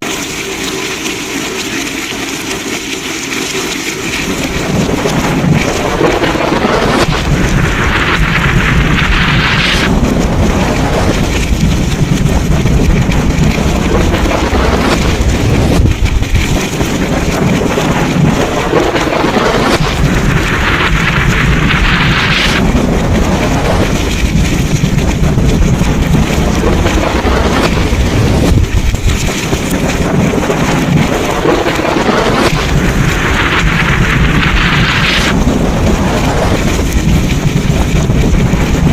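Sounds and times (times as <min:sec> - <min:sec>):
heavy rain: 0:00.0 - 0:38.9
wind: 0:00.0 - 0:38.9
low rumble of thunder: 0:04.1 - 0:38.9.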